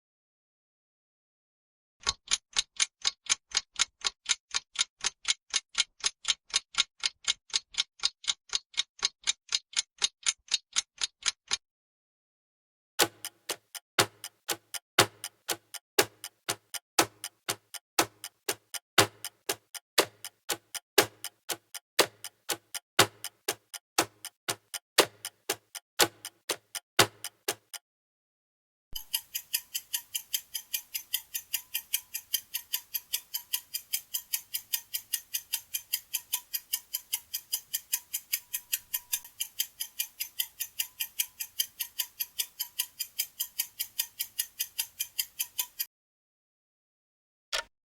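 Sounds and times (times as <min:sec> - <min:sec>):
light fast clock ticking: 0:02.0 - 0:11.6, 0:13.0 - 0:27.8, 0:29.0 - 0:45.9
deep heavy clock tick-tock: 0:02.3 - 0:11.6, 0:13.0 - 0:27.8, 0:29.0 - 0:45.9.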